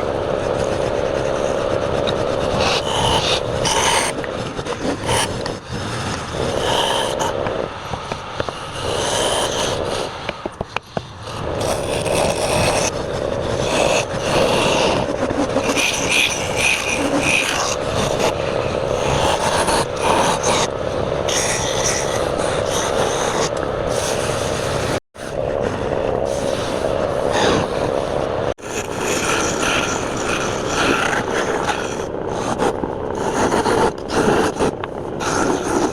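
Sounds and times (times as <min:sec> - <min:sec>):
wood lathe turning tool scraping: 0:00.0 - 0:27.9.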